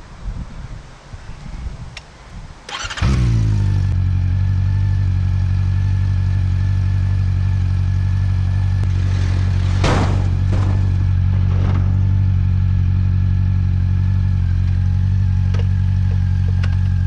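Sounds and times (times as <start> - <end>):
motorcycle engine cranking: 2.7 - 3.7
motorcycle engine idling: 2.7 - 8.8, 11.2 - 17.0.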